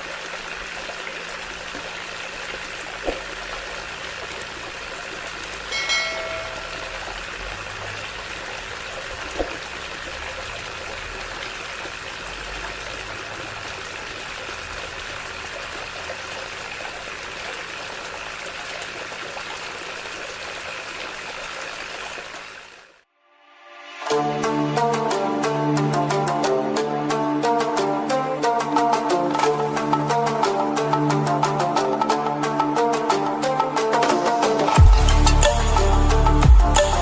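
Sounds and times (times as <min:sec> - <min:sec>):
water running: 0:00.0 - 0:22.9.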